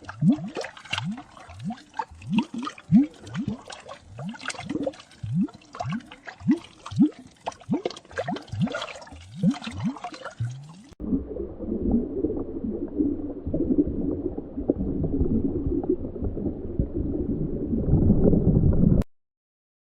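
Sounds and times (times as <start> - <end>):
underwater bubbling: 0.0 - 19.0.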